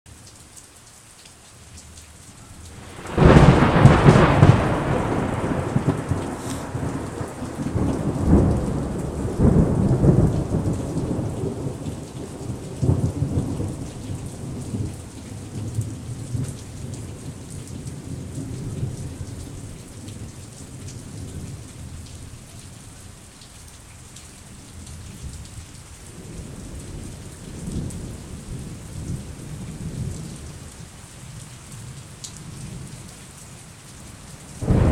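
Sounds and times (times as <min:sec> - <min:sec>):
steady rain: 0:00.1 - 0:34.9
rumbling thunder: 0:02.8 - 0:19.3, 0:34.6 - 0:34.9.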